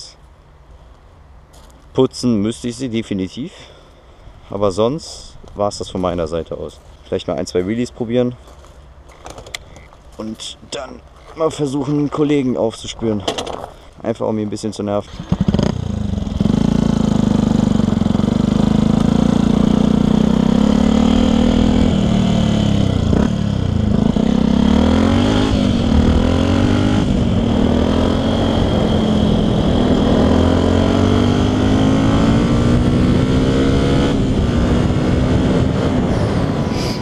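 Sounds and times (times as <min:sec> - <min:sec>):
motorcycle engine revving: 0:15.1 - 0:37.0.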